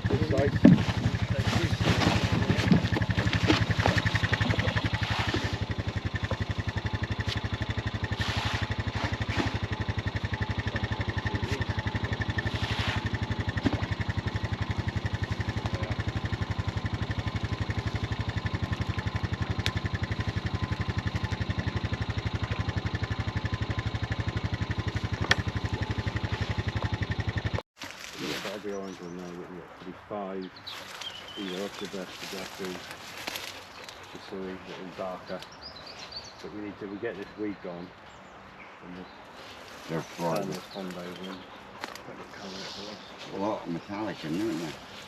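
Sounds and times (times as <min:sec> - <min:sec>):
motor running with fast pulse: 0:00.0 - 0:27.6.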